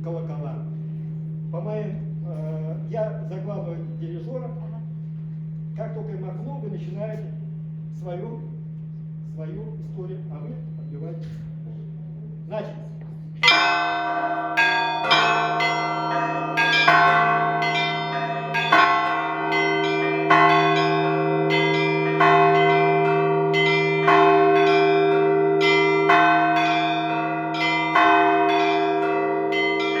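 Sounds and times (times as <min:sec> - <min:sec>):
deep bell humming: 0:00.2 - 0:30.0
heavy bell strokes: 0:13.4 - 0:30.0
small high bells striking: 0:13.4 - 0:30.0.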